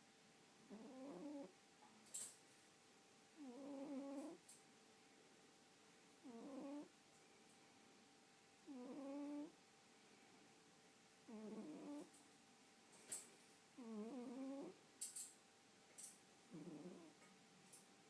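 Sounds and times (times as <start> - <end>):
pet snoring: 0.6 - 1.6, 3.4 - 4.4, 6.2 - 6.9, 8.6 - 9.6, 11.3 - 12.1, 13.8 - 14.8, 16.5 - 17.2.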